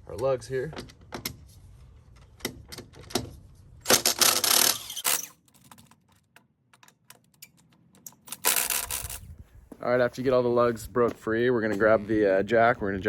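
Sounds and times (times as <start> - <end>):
harsh grating of lug nut: 3.8 - 5.8, 7.3 - 9.3.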